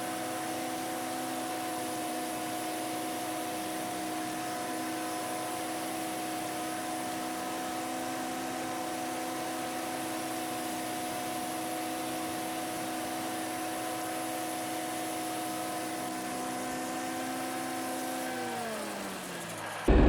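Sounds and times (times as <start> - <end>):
tractor engine running: 19.2 - 20.0.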